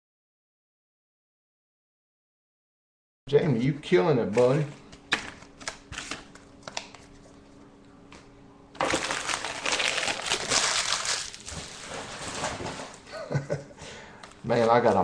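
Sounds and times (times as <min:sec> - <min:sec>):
foil wrapper crinkling: 0:08.8 - 0:13.0.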